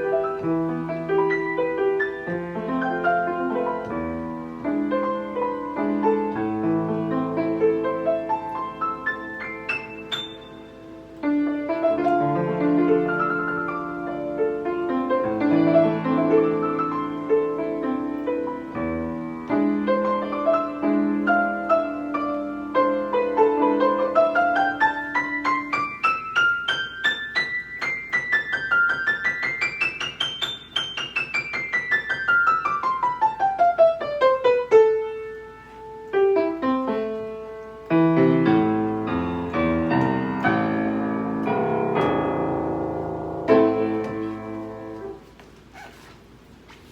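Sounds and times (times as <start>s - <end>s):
piano playing runs and chords: 0.0s - 46.9s.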